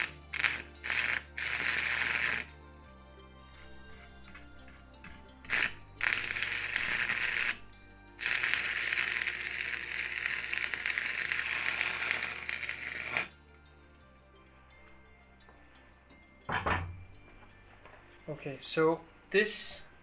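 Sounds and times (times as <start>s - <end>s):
arc welding crackling: 0.0s - 2.5s, 5.4s - 7.6s, 8.2s - 13.3s
background music: 0.0s - 20.0s.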